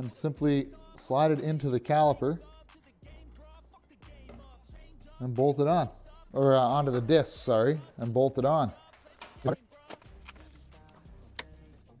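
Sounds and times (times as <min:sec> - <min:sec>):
faint background music: 0:00.0 - 0:12.0.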